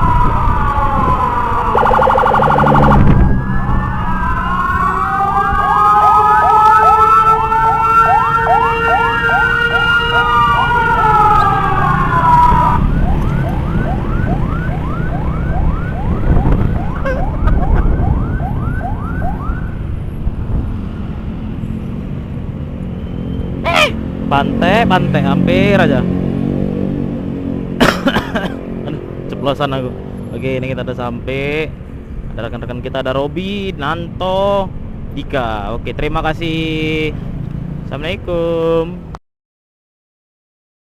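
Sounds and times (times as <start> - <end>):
fast yelping siren: 0.0 - 19.8
wailing siren: 0.0 - 20.1
road noise: 0.0 - 39.2
motorcycle engine: 1.2 - 4.6.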